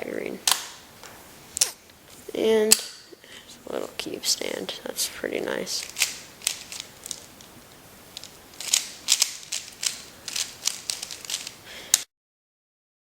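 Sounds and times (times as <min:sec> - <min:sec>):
speed cube clicking: 0:05.8 - 0:07.3, 0:08.2 - 0:12.1.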